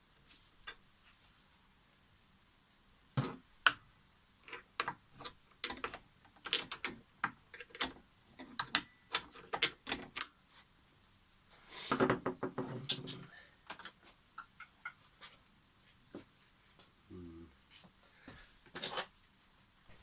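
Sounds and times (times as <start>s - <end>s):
small objects clicking and tapping: 4.4s - 10.4s.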